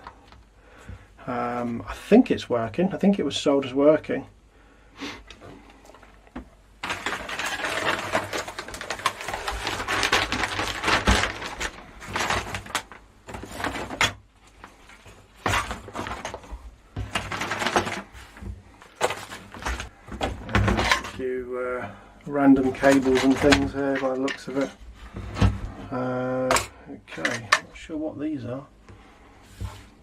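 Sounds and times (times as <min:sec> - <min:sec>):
cables and parts clattering: 0:05.3 - 0:21.3, 0:22.2 - 0:25.6, 0:26.4 - 0:27.8.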